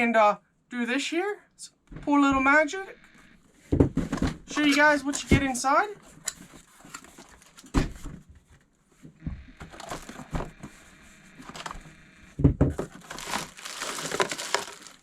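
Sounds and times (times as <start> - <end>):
packaging crinkling and rustling: 6.6 - 7.8, 9.8 - 10.3, 11.4 - 11.8, 12.8 - 15.0.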